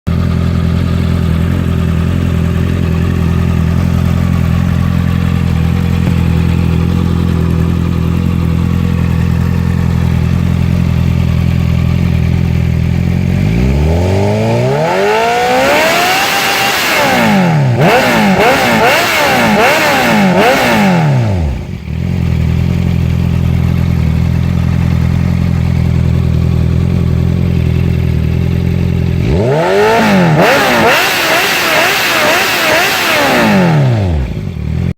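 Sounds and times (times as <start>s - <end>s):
motorcycle engine idling and revving: 0.0s - 34.9s.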